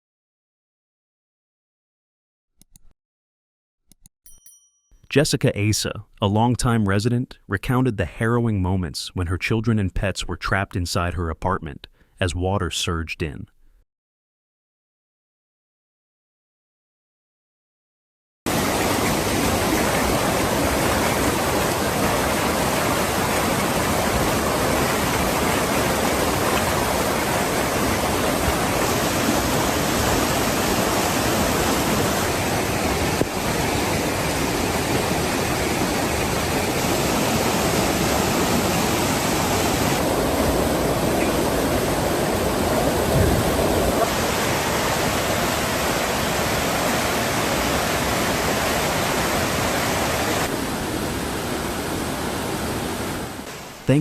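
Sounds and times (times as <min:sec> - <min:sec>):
floodwater rushing: 0:18.5 - 0:54.0.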